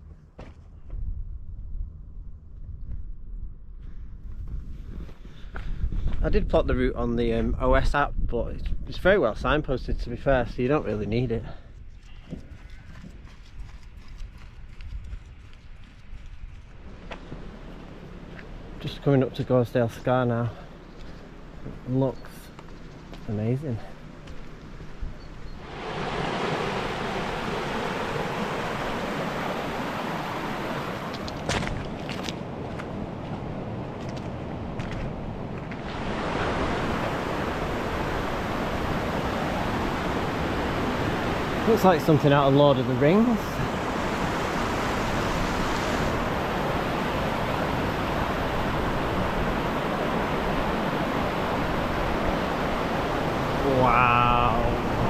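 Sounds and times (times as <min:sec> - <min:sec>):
waterfall rushing: 0:25.6 - 0:31.4, 0:35.8 - 0:55.0.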